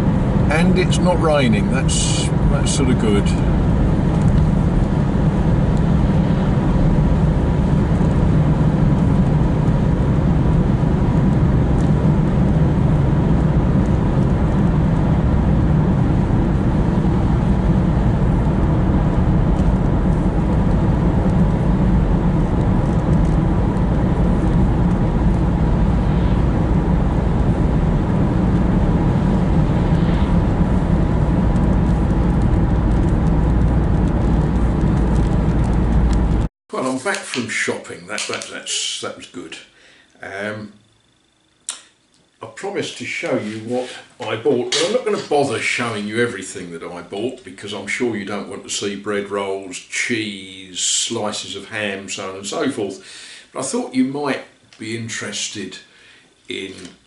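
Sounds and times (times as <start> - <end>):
car cabin road and engine noise: 0.0 - 36.5.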